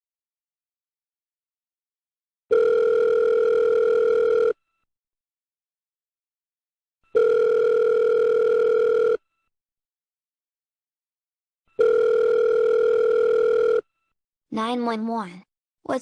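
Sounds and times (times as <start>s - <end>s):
telephone ringback tone: 2.5s - 4.8s, 7.1s - 9.5s, 11.7s - 13.9s.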